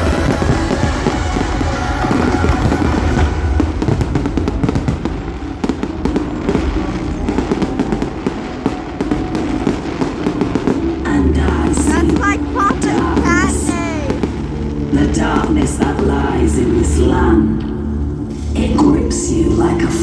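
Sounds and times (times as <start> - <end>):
fireworks bangs and crackles: 0.0 - 17.1
person singing: 11.8 - 14.2
loud show music: 11.8 - 14.3.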